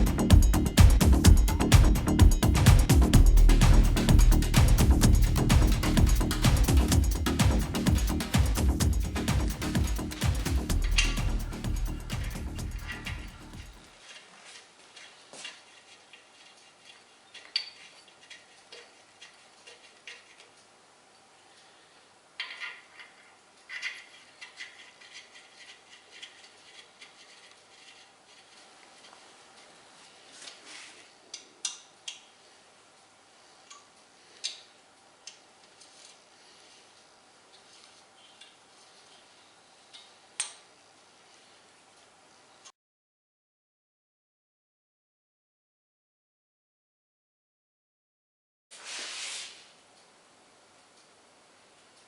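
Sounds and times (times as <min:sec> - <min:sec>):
rustle: 0:13.8 - 0:42.7, 0:48.7 - 0:50.1
metallic clicks of tools and parts: 0:17.4 - 0:18.9, 0:39.9 - 0:40.7.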